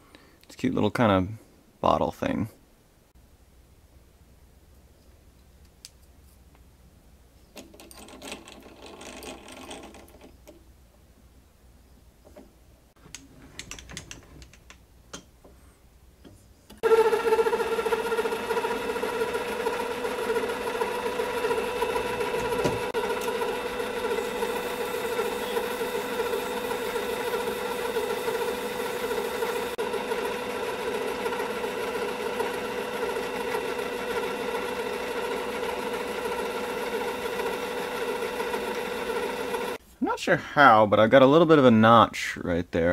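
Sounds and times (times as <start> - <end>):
metal lathe motor whining: 16.8 - 39.8.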